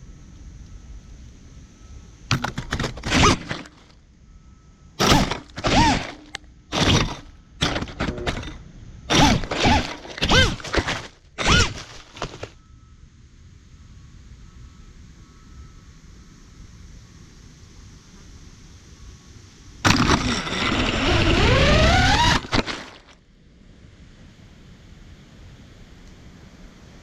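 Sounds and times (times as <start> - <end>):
quadcopter motors revving: 2.3 - 3.9, 5.0 - 12.6, 19.9 - 23.2.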